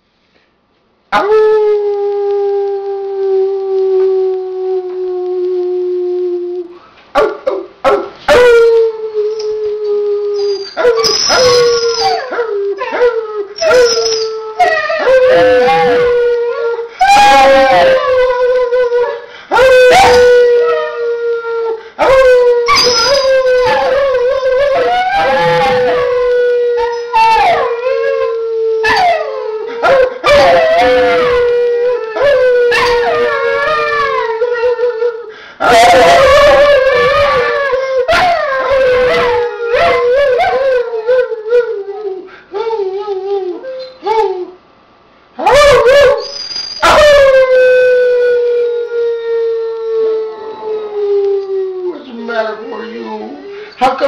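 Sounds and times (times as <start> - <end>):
dog howling and yipping: 10.3 - 21.0, 22.0 - 34.8, 35.6 - 41.8, 45.4 - 48.4
person howling: 23.5 - 28.4.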